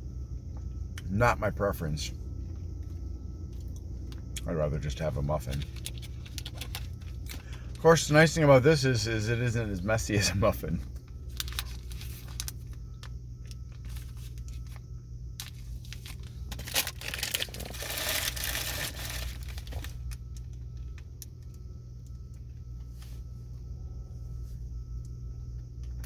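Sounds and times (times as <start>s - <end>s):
steady low hum: 0.0s - 26.0s
plastic wrapper crinkling: 11.2s - 12.8s, 15.4s - 20.4s.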